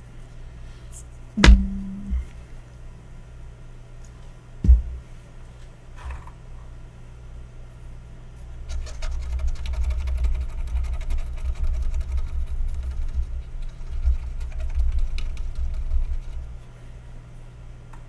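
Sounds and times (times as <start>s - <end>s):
steady electrical hum: 0.0s - 2.5s, 4.6s - 5.6s
low knocks on bench: 1.4s - 2.3s, 4.7s - 5.0s.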